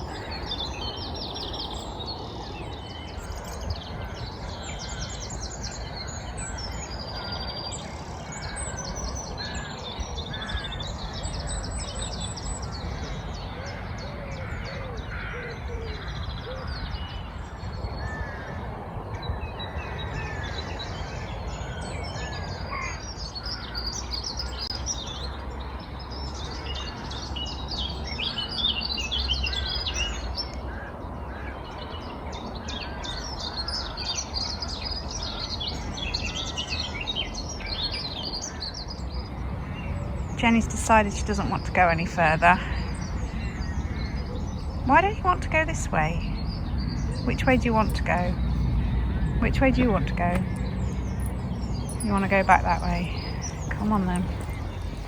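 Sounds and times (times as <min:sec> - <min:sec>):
birds singing and chirping: 0:00.0 - 0:55.0
low outdoor rumble: 0:39.6 - 0:55.0.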